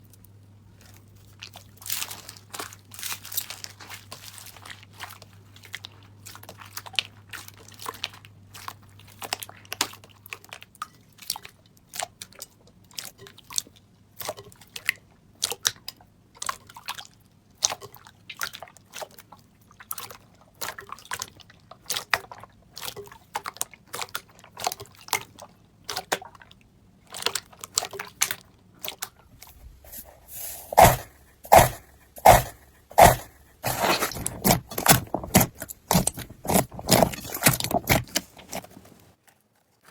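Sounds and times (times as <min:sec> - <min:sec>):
slime squishing: 0:00.8 - 0:09.9, 0:27.2 - 0:39.2
slime crackling and popping: 0:33.0 - 0:38.6.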